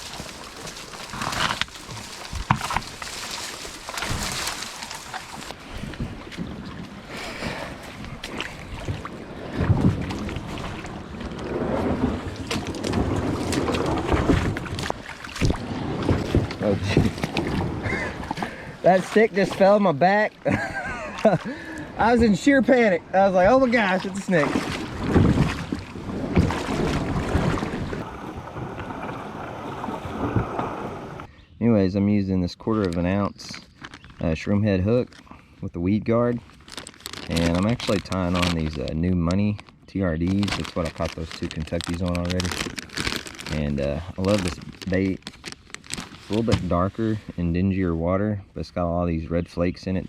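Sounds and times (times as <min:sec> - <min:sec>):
wind rumbling on microphone: 0:00.0 - 0:18.9, 0:20.5 - 0:31.3
kayak hull scraping against logs: 0:00.0 - 0:20.3, 0:21.1 - 0:28.1, 0:28.8 - 0:31.3, 0:36.4 - 0:47.7.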